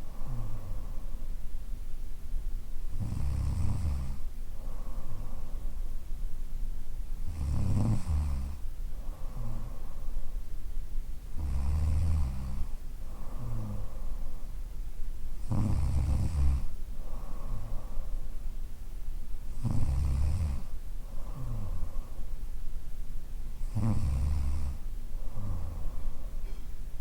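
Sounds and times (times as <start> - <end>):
soft breath sound: 0.0 - 27.0
woman snoring: 0.2 - 1.0, 3.0 - 4.2, 7.3 - 8.6, 11.4 - 13.9, 15.4 - 16.7, 19.6 - 21.9, 23.6 - 25.9.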